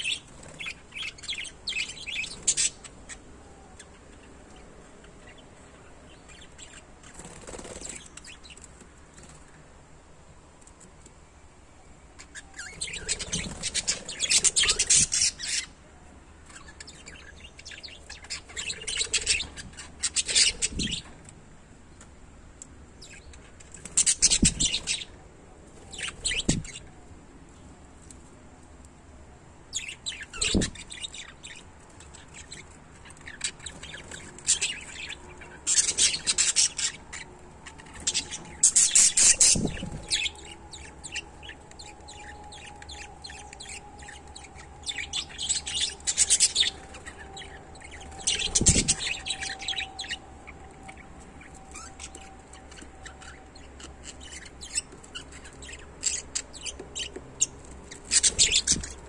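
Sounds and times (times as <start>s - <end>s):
parrots chirping: 12.2s - 15.7s, 29.7s - 59.0s.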